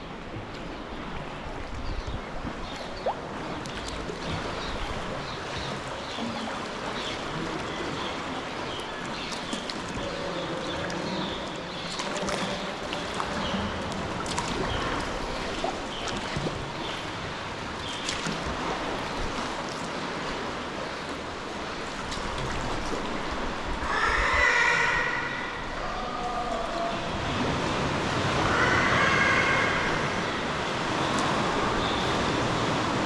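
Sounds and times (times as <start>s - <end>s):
water lapping and splashing: 0.0s - 33.0s
seabirds calling: 23.8s - 27.4s.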